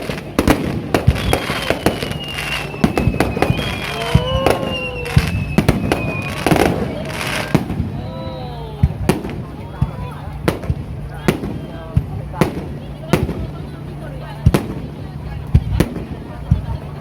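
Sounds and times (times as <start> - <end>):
falling firework whistle: 0.0 - 8.5
fireworks bangs and crackles: 0.0 - 17.0.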